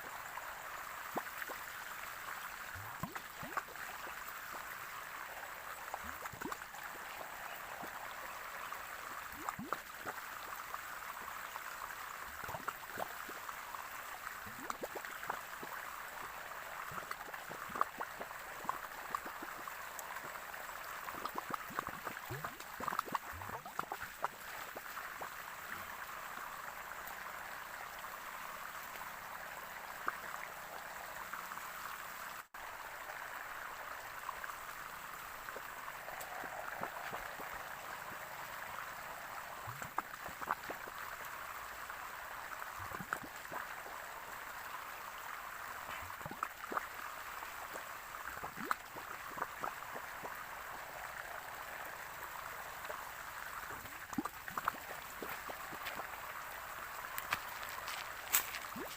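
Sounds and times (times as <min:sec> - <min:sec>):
water plinks and gurgles: 0:00.0 - 0:58.9
running water splashing: 0:34.2 - 0:58.9.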